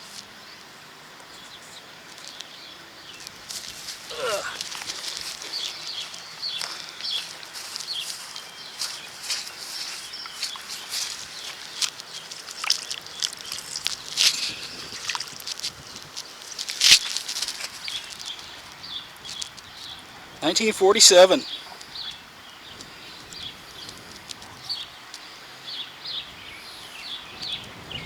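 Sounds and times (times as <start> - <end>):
coin and dirt handling noise: 3.2 - 21.5.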